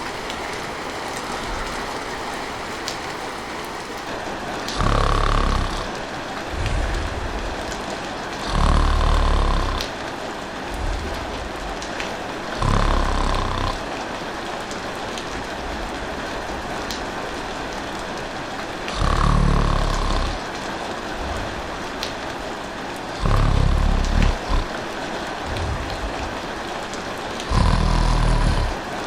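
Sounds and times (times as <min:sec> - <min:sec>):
person snoring: 0:00.0 - 0:04.1, 0:04.8 - 0:05.9, 0:06.5 - 0:07.2, 0:08.4 - 0:09.9, 0:12.6 - 0:13.8, 0:18.9 - 0:20.4, 0:23.1 - 0:24.8, 0:25.4 - 0:26.4, 0:27.4 - 0:28.8
steady rain falling: 0:00.0 - 0:29.0.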